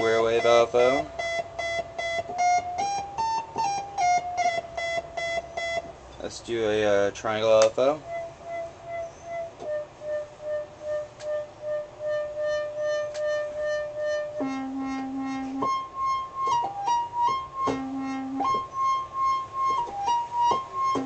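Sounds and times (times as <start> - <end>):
pulsing analog synthesizer: 7.9 - 21.0.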